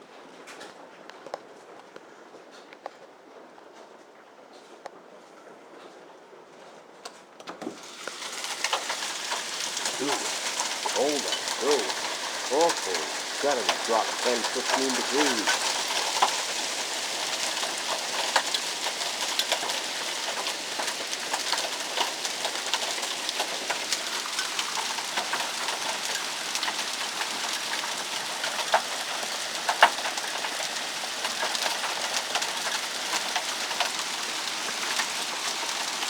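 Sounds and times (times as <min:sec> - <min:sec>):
hailstones striking: 0:07.6 - 0:36.0
heavy rain hissing: 0:07.7 - 0:36.0.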